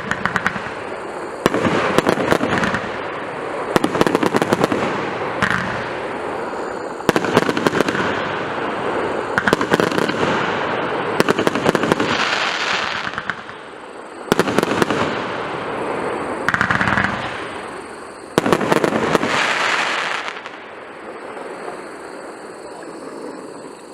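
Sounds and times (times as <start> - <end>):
fireworks volleys of rapid shots: 0.0 - 20.9
fireworks hiss: 0.0 - 23.9.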